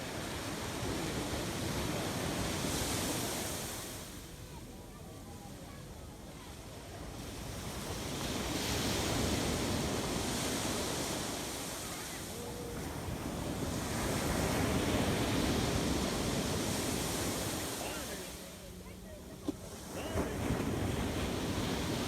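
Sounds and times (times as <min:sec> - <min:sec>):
ocean surf washing up beach: 0:00.0 - 0:04.9, 0:06.4 - 0:22.0.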